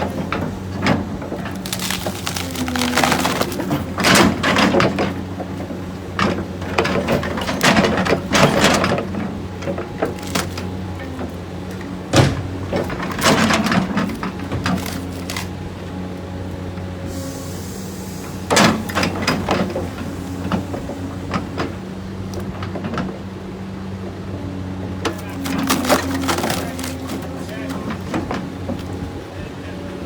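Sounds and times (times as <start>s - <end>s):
knocks and clattering impacts: 0.0s - 15.5s, 25.0s - 29.2s
engine running: 0.0s - 30.0s.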